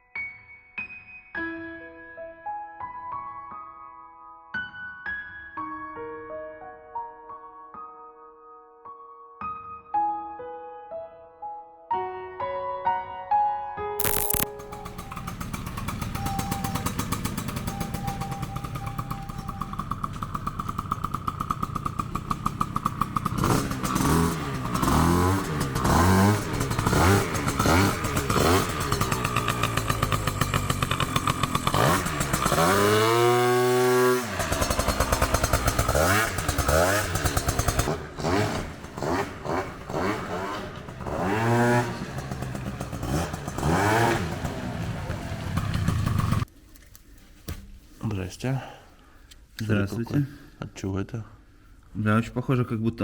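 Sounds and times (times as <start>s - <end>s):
engine revving: 14.0s - 46.5s.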